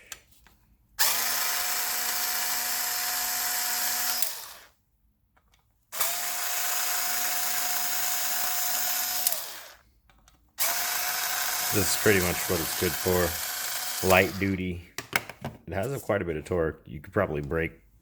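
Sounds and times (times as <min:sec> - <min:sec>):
cordless screwdriver motor spinning: 0:01.0 - 0:04.7, 0:06.0 - 0:09.8, 0:10.6 - 0:14.5.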